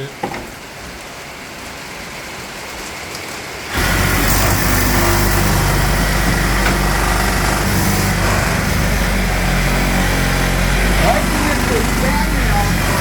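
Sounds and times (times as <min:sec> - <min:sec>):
rain hissing: 0:00.0 - 0:13.0
small engine droning: 0:03.7 - 0:13.0.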